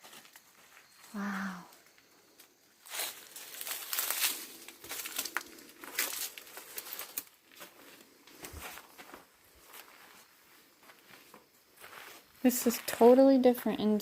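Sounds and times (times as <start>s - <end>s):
footsteps on loose ground: 2.8s - 13.8s.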